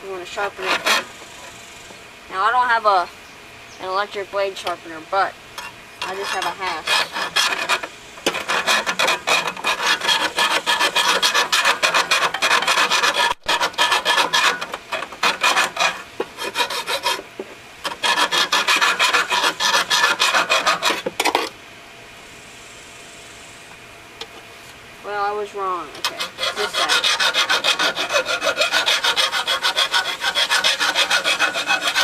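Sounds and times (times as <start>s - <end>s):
hand rasp scraping metal blade: 0.1s - 1.6s, 5.6s - 21.5s, 25.9s - 32.0s.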